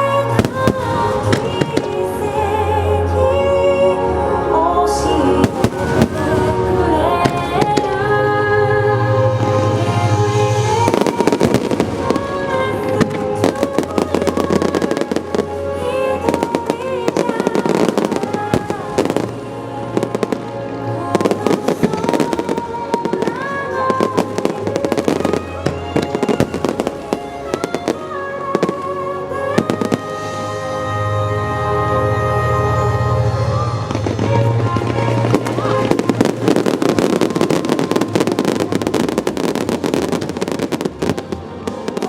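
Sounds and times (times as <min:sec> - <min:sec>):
fireworks bangs and crackles: 0:00.0 - 0:02.4, 0:05.4 - 0:08.2, 0:09.3 - 0:30.7, 0:33.2 - 0:42.0
loud music with sustained tones: 0:00.0 - 0:42.0.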